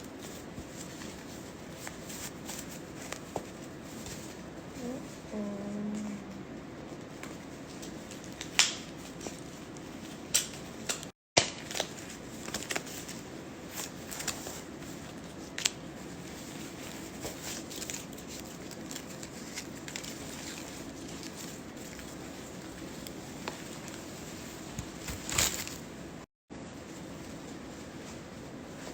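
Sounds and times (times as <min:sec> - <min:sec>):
packaging crinkling and rustling: 0:07.7 - 0:26.0.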